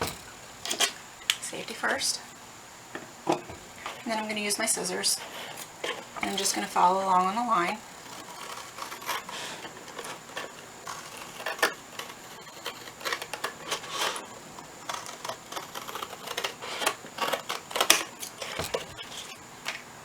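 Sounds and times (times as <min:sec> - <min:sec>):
scissors cutting cardboard: 0:04.9 - 0:19.8.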